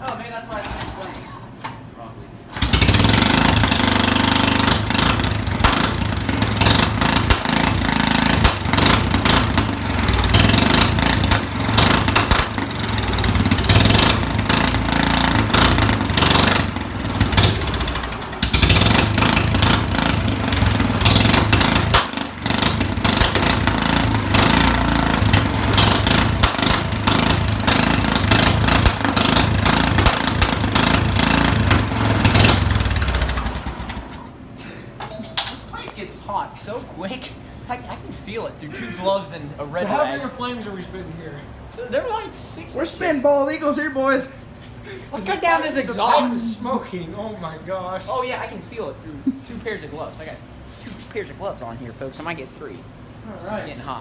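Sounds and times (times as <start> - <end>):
lawnmower engine running loud: 2.6 - 34.2
exhaust crackling and popping: 2.6 - 34.3.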